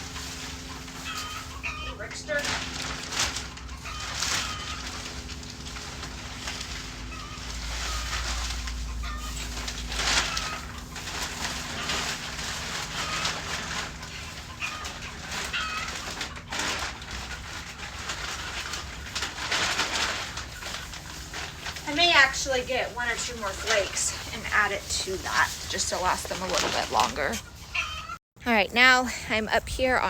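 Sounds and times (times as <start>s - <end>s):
loud noisy rustles: 0.0s - 28.2s.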